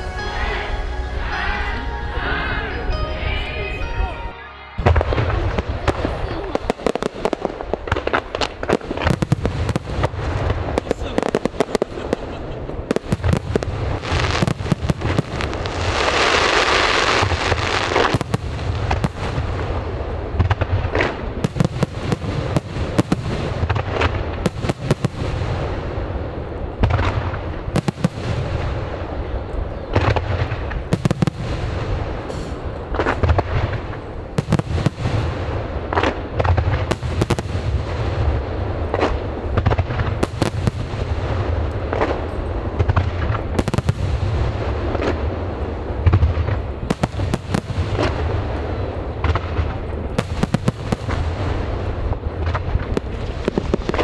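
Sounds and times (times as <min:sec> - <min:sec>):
low rumble: 0:00.0 - 0:06.4
firework shells bursting: 0:04.8 - 0:54.0
hissing crackle: 0:04.8 - 0:54.0.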